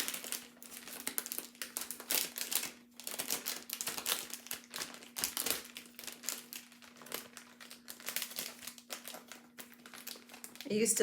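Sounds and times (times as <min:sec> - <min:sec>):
cellophane crinkling: 0:00.0 - 0:11.0.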